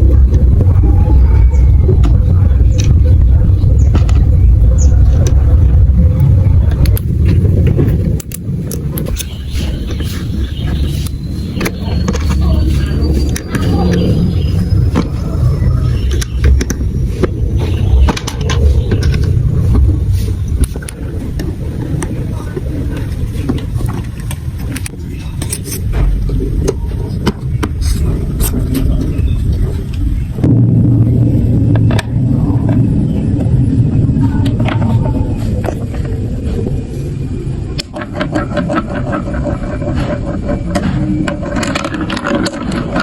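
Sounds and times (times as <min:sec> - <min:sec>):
marbles rolling on plastic track: 0:37.8 - 0:43.0.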